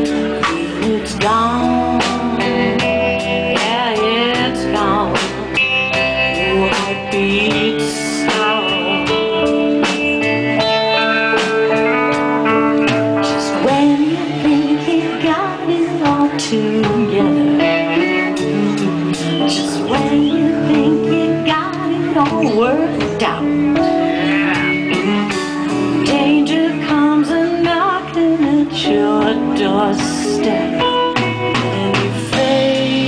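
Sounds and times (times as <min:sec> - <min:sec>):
steady drum beat: 0:00.0 - 0:17.2, 0:17.8 - 0:28.0, 0:29.2 - 0:33.0
bass guitar: 0:00.0 - 0:33.0
electric guitar: 0:00.0 - 0:33.0.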